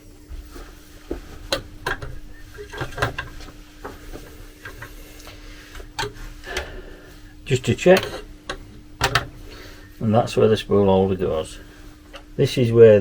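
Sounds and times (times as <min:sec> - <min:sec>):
faint steady hum: 0:00.0 - 0:13.0
plastic parts clicking and knocking: 0:07.9 - 0:09.4.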